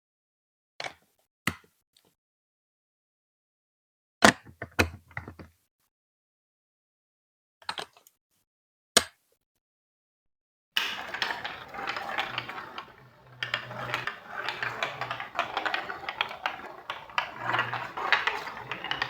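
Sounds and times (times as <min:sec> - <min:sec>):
plastic pieces clacking: 0:10.8 - 0:19.0.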